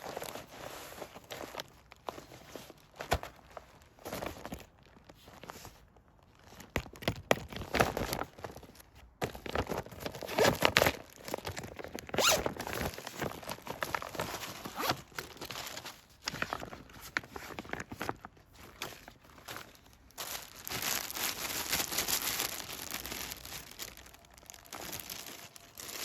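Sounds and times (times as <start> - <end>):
packaging rustling and tearing: 6.3 - 26.0.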